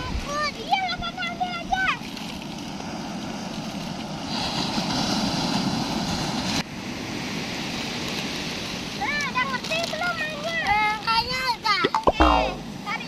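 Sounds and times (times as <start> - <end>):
rushing surf: 2.5 - 10.5.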